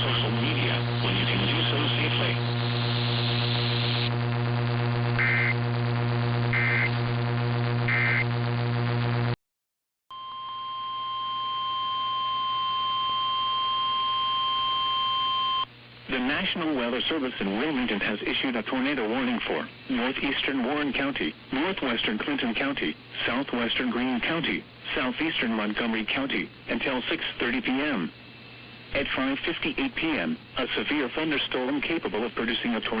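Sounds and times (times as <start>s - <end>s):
steady electrical buzz: 0.0s - 9.4s
two-tone data bursts: 5.2s - 5.6s, 6.5s - 6.9s, 7.9s - 8.3s
single-pitch warning tone: 10.1s - 15.7s.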